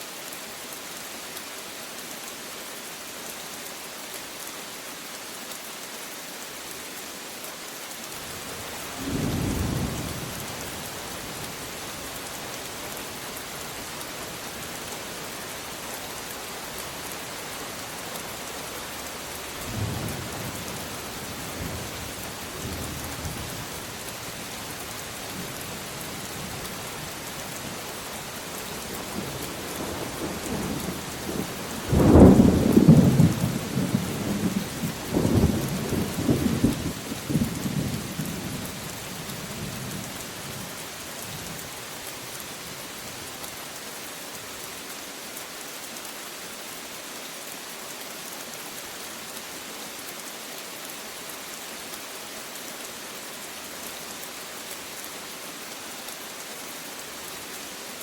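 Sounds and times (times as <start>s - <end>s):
steady rain: 0.0s - 58.0s
thunder rumbling: 30.0s - 38.6s.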